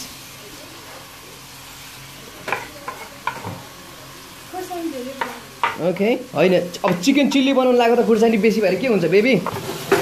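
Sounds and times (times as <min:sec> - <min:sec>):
chicken sizzling in frying pan: 0:00.0 - 0:10.0
spoon scraping pan: 0:02.4 - 0:03.5.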